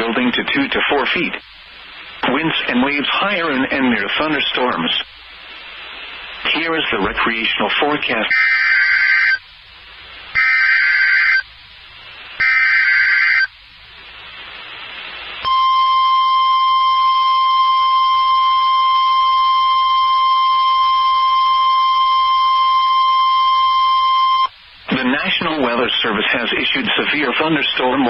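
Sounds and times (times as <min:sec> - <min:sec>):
radio static hiss: 0:00.0 - 0:15.5, 0:16.3 - 0:28.0
buzzy digital data bursts: 0:06.4 - 0:09.4, 0:10.3 - 0:13.6
steady warning alarm tone: 0:08.3 - 0:09.4, 0:10.4 - 0:11.6, 0:12.4 - 0:13.6, 0:15.4 - 0:24.5.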